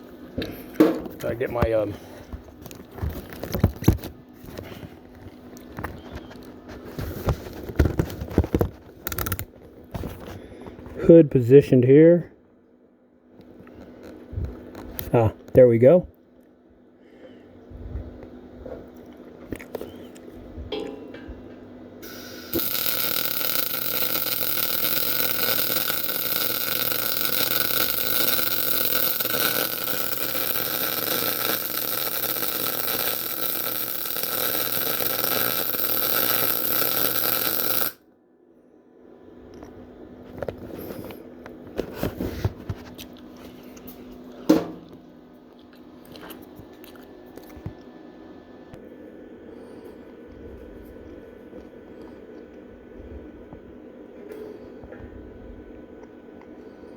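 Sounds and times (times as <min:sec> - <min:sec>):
welder arc hissing: 0:22.0 - 0:38.0.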